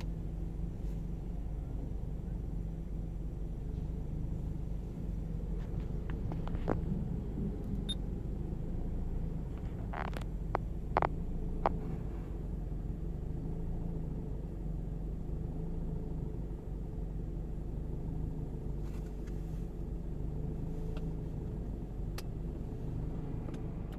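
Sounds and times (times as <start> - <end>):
car engine idling roughly: 0.0 - 15.6.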